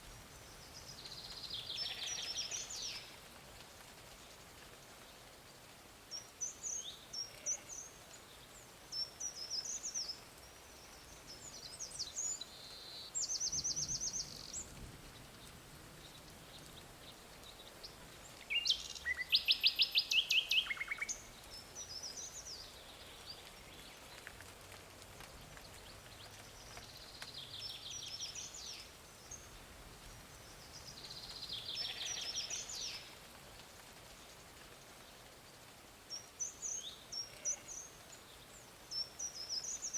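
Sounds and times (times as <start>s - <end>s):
faint outdoor hiss: 0.0s - 39.9s
birds chirping and trilling: 30.5s - 33.0s.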